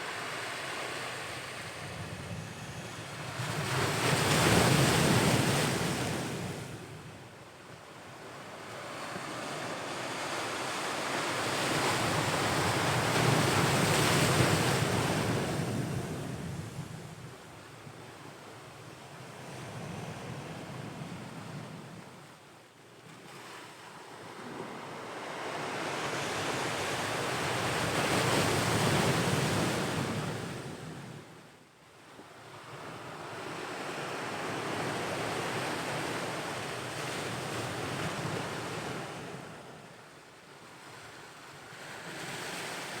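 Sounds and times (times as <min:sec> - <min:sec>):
wind on microphone: 0:01.5 - 0:05.6.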